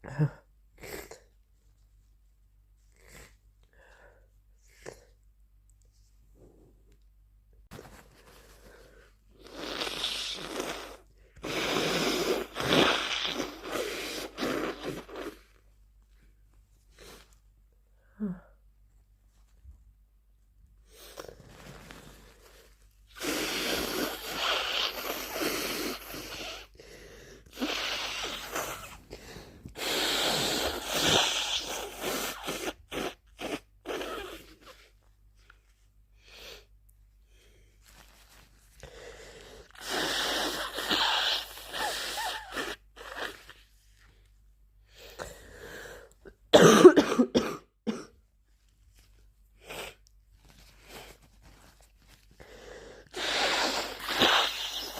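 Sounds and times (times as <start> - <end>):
person sneezing: 46.5 - 48.1, 53.1 - 54.9
person coughing: 46.5 - 48.2.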